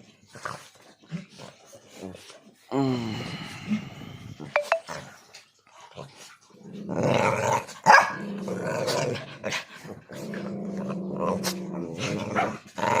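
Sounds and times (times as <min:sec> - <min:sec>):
dog growling: 0:05.9 - 0:13.0
dog barking: 0:07.9 - 0:08.2.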